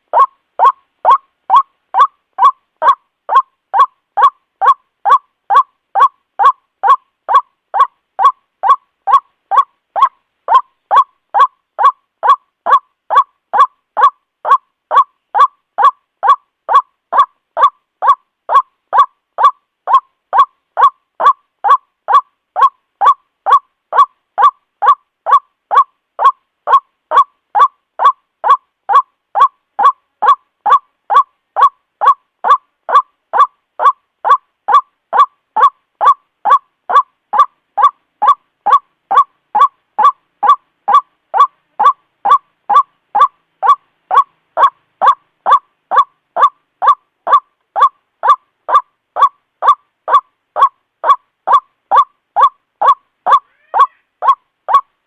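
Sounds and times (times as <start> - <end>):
waterhen calling: 0.0 - 54.9.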